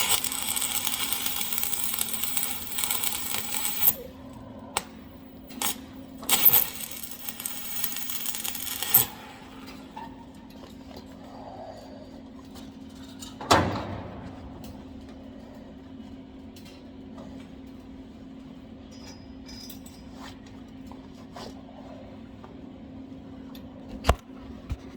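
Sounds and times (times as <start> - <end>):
steady electrical hum: 0.0 - 11.6.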